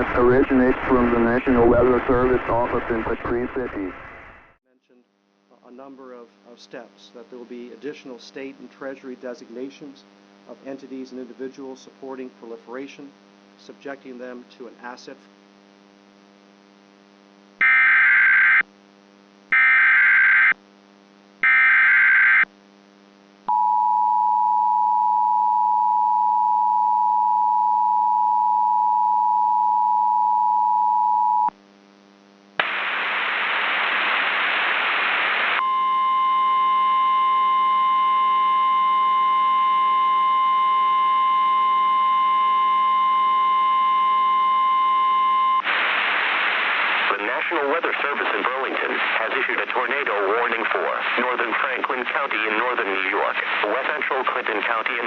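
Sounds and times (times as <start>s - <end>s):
low steady hum: 0.0s - 4.5s
static: 0.0s - 23.5s, 31.4s - 35.7s, 45.6s - 55.0s
single-tone warning alarm: 17.6s - 18.6s, 19.5s - 20.6s, 21.4s - 22.5s, 35.6s - 45.6s.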